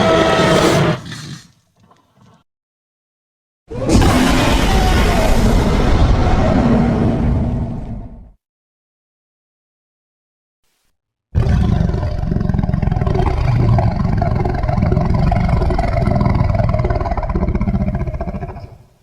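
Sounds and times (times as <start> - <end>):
monster roar: 0.0 - 1.4, 3.7 - 8.2, 11.4 - 18.8.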